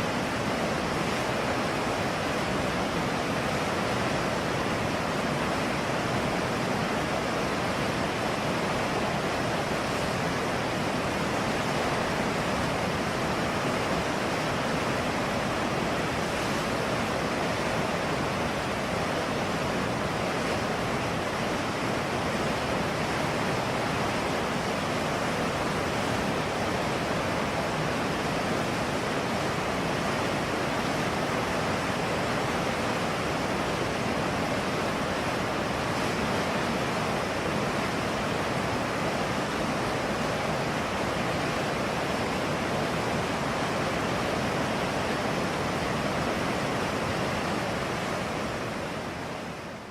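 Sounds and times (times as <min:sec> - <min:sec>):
river water rushing: 0:00.0 - 0:49.9.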